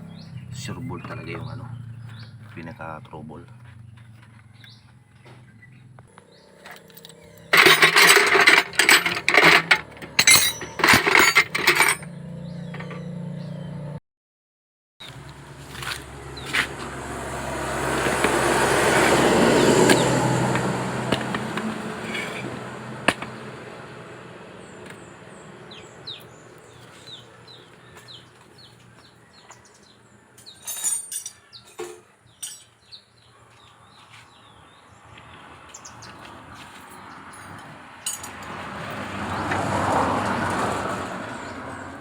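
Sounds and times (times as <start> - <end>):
small birds chirping: 0.0 - 7.5, 12.0 - 14.0, 24.6 - 30.7, 31.3 - 38.3
vehicle passing: 0.0 - 10.6, 11.5 - 14.0, 15.1 - 30.4, 32.9 - 42.0.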